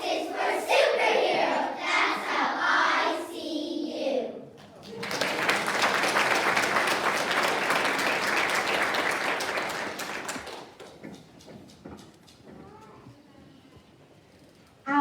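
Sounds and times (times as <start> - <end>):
audience applauding: 4.6 - 11.2.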